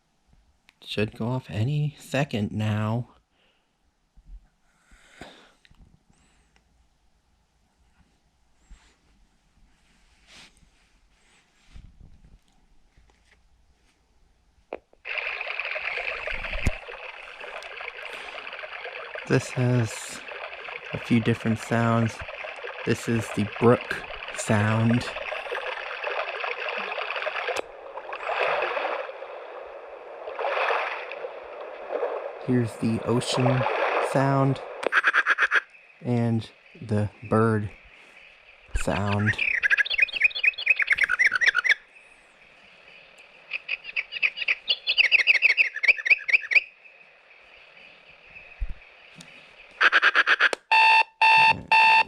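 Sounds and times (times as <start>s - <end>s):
faint speaker hiss: 0.0s - 15.0s, 35.9s - 39.4s
running water from small speaker: 15.0s - 35.2s
recorded birds chirping: 19.1s - 25.6s, 34.2s - 50.5s
alarm buzzer beeping: 50.7s - 52.0s.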